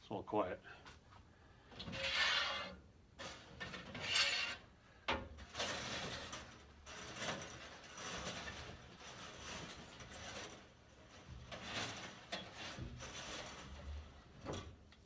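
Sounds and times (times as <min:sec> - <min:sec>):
scraping inside fireplace flue: 0:05.5 - 0:14.9.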